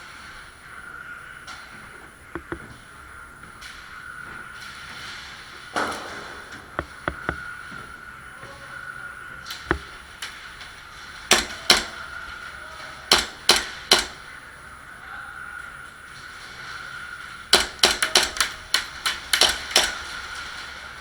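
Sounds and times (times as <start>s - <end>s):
airsoft gun clicks: 2.3s - 2.7s.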